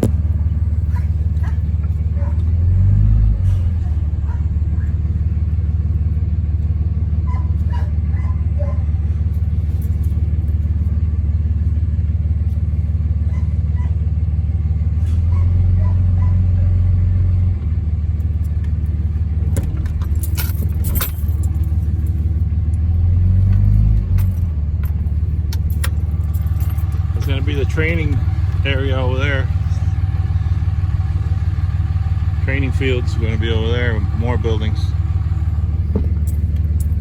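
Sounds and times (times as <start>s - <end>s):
vehicle engine running: 0.0s - 37.0s
light rattles and clicks: 18.3s - 22.9s, 23.5s - 30.2s.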